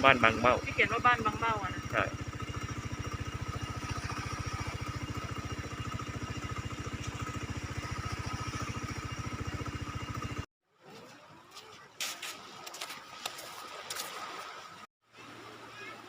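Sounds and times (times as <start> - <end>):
engine running with pulsing beat: 0.0 - 10.5.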